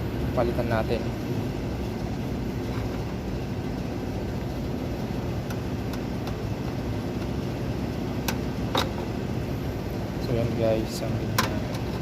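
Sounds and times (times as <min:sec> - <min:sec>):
low background rumble: 0:00.0 - 0:12.0.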